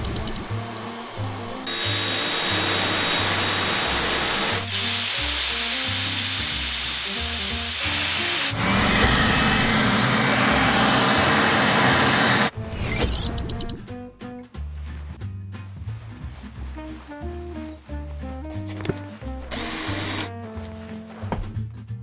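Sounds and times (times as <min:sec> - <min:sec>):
hissing air jets: 0:00.0 - 0:14.0
background music: 0:00.0 - 0:22.0.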